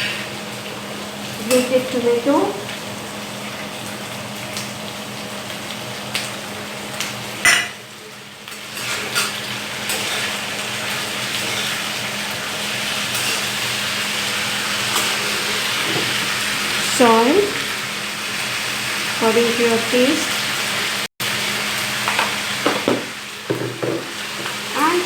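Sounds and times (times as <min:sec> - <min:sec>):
vegetables sizzling in a pan: 0:00.0 - 0:25.0
spoon clinking and scraping pan: 0:07.4 - 0:07.8, 0:08.8 - 0:10.4.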